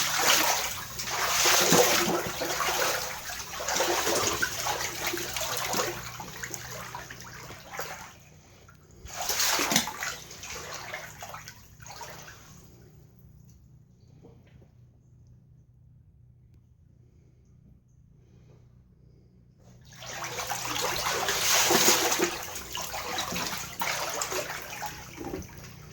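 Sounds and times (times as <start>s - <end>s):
floodwater sloshing and splashing: 0.0s - 13.0s, 19.8s - 25.9s.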